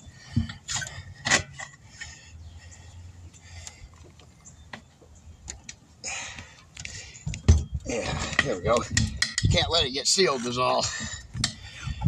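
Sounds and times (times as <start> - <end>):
tire iron clanking on wheel rim: 0.2 - 2.1, 7.4 - 11.7.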